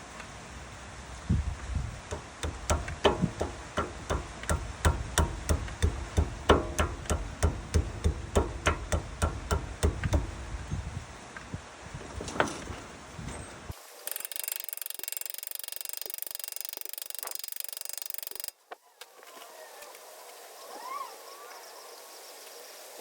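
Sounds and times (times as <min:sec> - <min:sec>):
hammer blows on metal: 0:02.0 - 0:11.0.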